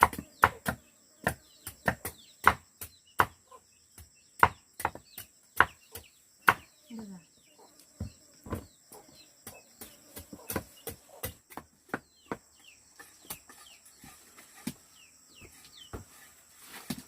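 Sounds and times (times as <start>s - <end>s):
chicks peeping: 12.0s - 16.2s.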